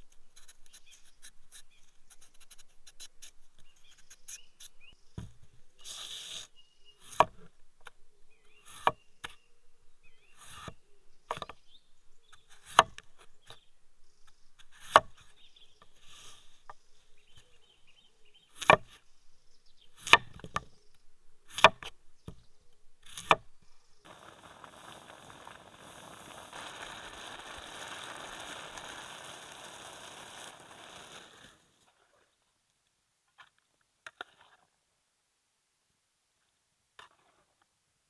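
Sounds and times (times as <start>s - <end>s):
steady hiss: 5.8s - 6.6s, 24.0s - 31.8s
chopping strikes on wood: 18.6s - 18.9s, 23.2s - 23.4s.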